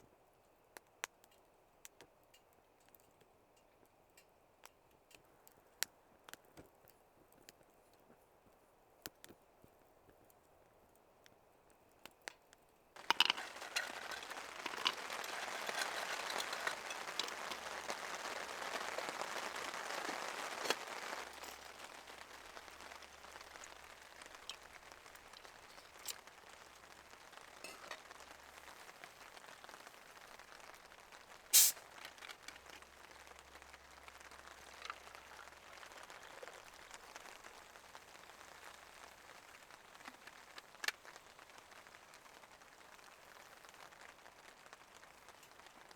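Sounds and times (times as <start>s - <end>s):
rain falling: 13.0s - 45.9s.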